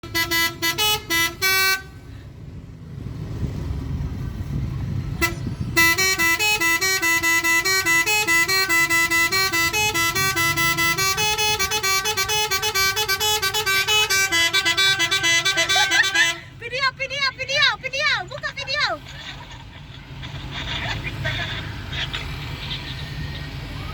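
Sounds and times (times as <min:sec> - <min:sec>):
bus multi-tone horn tune: 0:00.0 - 0:02.2, 0:05.1 - 0:18.6
bus engine rumble: 0:00.0 - 0:23.9.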